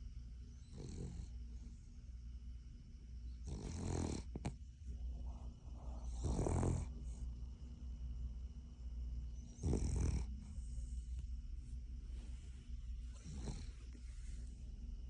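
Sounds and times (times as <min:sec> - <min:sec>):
dog snoring: 0:00.6 - 0:01.8, 0:03.3 - 0:04.6, 0:05.2 - 0:07.3, 0:09.4 - 0:11.2, 0:13.0 - 0:14.6.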